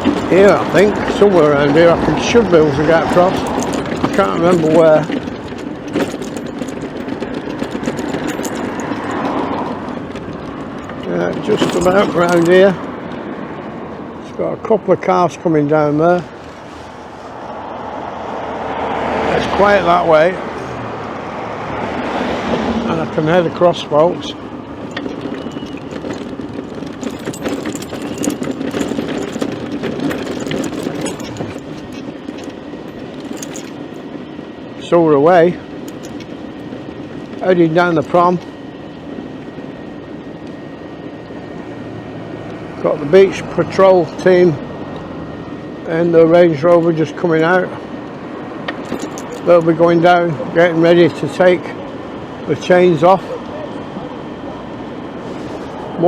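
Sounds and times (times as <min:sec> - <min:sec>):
scooter clicking and rattling: 0:00.0 - 0:14.2, 0:23.0 - 0:41.2, 0:47.5 - 0:52.0
street traffic hum: 0:00.0 - 0:56.0
vehicle passing by: 0:16.7 - 0:24.4.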